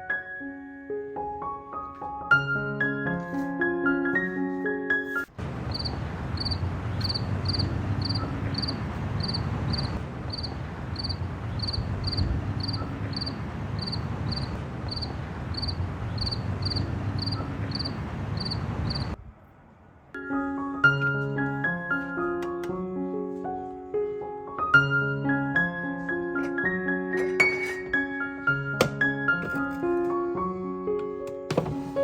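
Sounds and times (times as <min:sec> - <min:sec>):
cricket chirping: 0:05.6 - 0:19.2.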